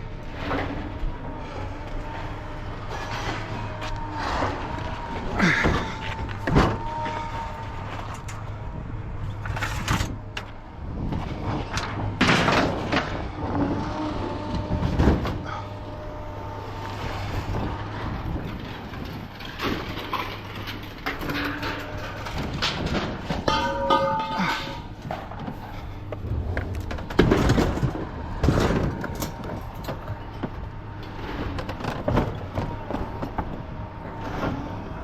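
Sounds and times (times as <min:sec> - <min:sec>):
metallic bangs and clanks: 0:17.5 - 0:33.6.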